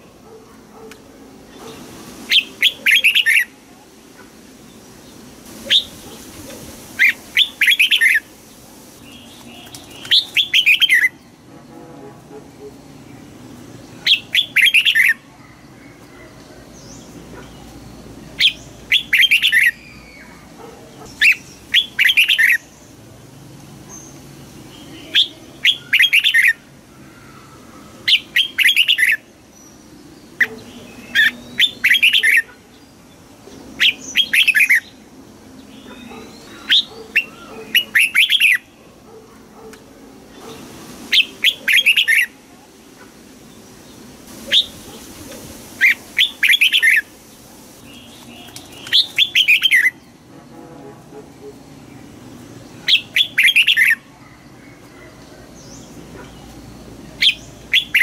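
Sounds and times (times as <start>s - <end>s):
bird singing: 1.5s - 3.6s, 9.0s - 11.4s, 13.0s - 23.0s, 23.9s - 35.0s, 35.6s - 38.9s, 47.8s - 50.6s, 51.7s - 58.0s.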